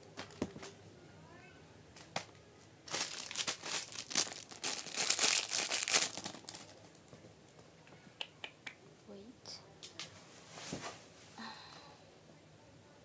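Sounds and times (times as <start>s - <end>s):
plastic packaging crinkling: 2.8s - 7.1s.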